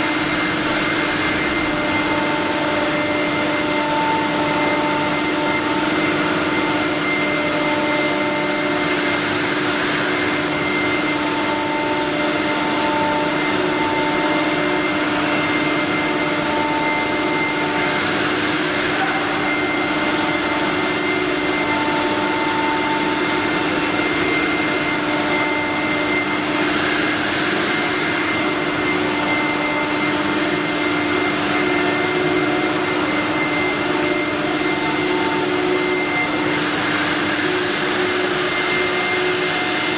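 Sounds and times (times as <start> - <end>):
router spindles humming and whining: 0.0 - 39.9
higher machine tone: 10.1 - 39.9.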